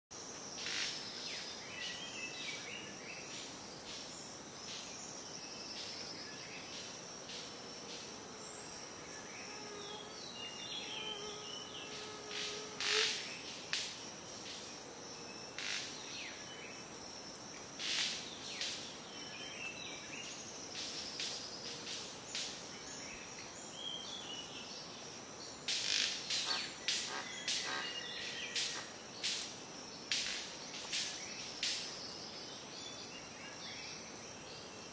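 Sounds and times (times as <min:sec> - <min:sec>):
high drone of insects: 0:00.1 - 0:34.9
bird calls and chirps: 0:25.8 - 0:29.4.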